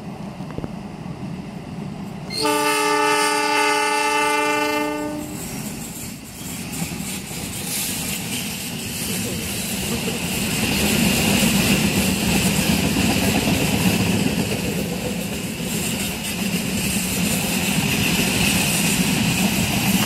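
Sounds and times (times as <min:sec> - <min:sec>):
diesel locomotive engine drone: 0:00.0 - 0:20.0
hiss: 0:05.4 - 0:12.9.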